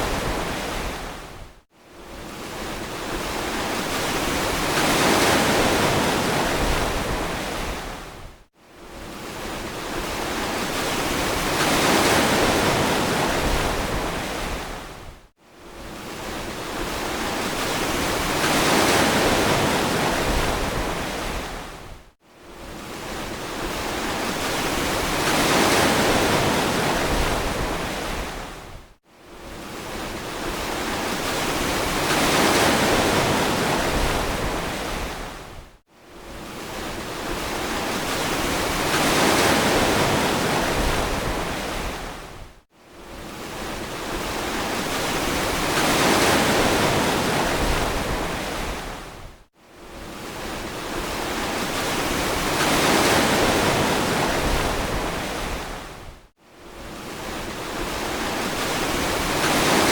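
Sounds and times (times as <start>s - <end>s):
ocean waves on beach: 0.0s - 59.9s.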